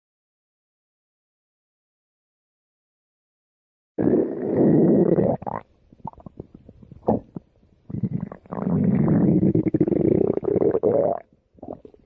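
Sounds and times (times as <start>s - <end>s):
stomach growling: 4.0s - 12.0s.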